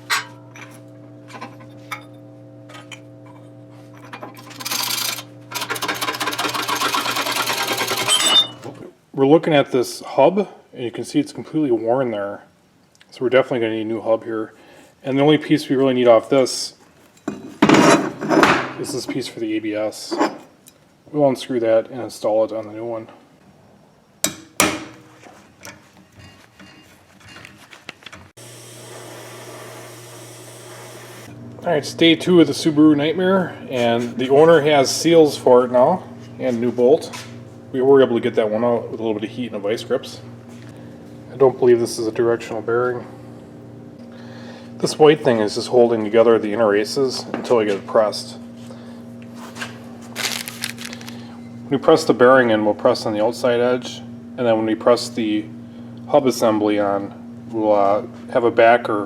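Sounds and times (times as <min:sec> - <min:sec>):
electrical hum: 0:00.0 - 0:08.9, 0:28.4 - 0:59.0
power tool rattling buzz: 0:03.8 - 0:08.8, 0:28.4 - 0:31.7, 0:50.2 - 0:51.3
steady hiss with low hum: 0:08.6 - 0:26.6.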